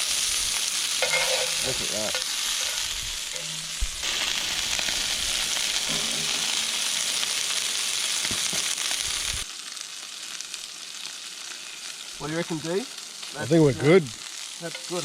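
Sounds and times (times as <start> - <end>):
meat sizzling in a frying pan: 0.0 - 15.0.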